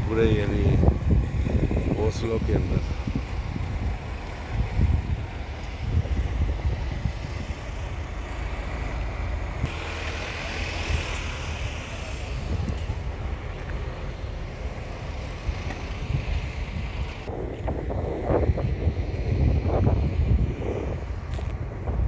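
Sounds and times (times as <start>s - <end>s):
low engine rumble: 0.0s - 22.0s
wind buffeting microphone: 0.0s - 22.0s.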